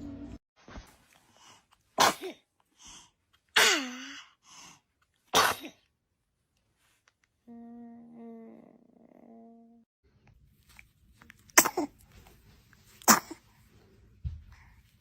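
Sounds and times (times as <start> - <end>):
baby sneezing: 2.0 - 2.4, 3.6 - 4.2, 5.3 - 5.8, 11.6 - 12.0, 13.0 - 13.4.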